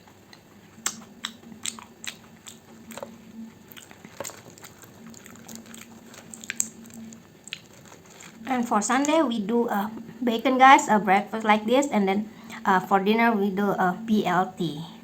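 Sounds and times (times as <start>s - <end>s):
person chewing crunchy food: 0.0s - 9.2s
faint steady hum: 0.0s - 15.0s.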